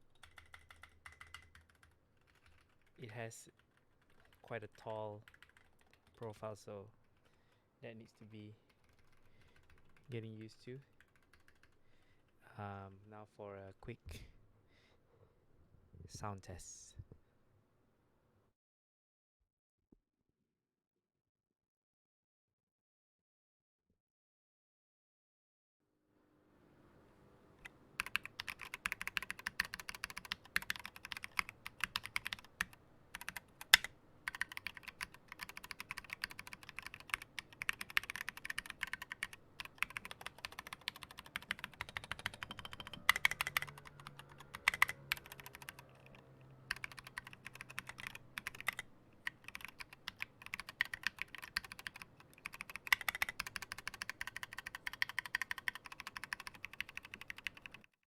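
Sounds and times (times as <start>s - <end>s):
mechanical keyboard typing: 0.0s - 6.3s, 8.8s - 11.8s, 28.0s - 58.0s.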